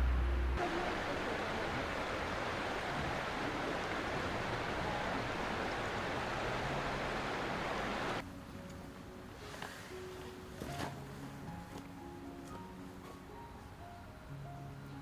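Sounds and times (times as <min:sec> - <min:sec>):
low rumble: 0:00.0 - 0:00.6
flowing water rushing: 0:00.6 - 0:08.2.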